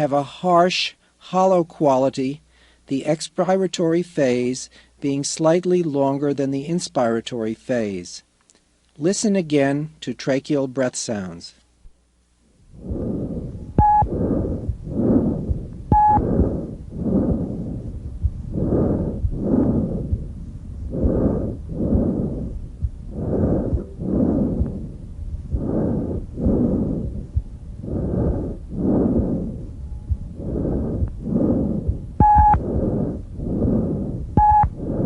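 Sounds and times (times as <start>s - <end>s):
tracheal breath sounds: 12.6s - 35.0s
brief tone: 13.8s - 14.1s, 15.9s - 16.2s, 32.2s - 32.6s, 34.4s - 34.7s.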